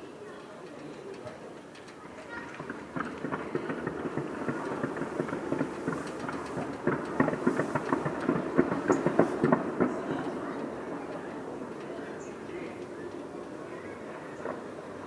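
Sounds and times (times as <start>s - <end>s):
fireworks bangs and crackling: 2.5s - 12.5s, 14.0s - 15.0s.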